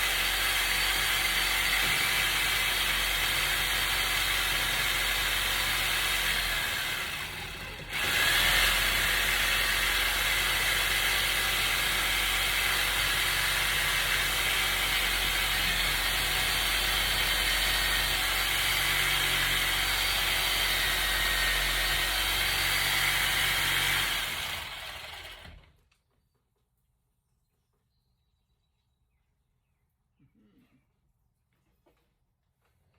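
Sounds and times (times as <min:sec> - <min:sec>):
power tool running: 0:00.0 - 0:25.7.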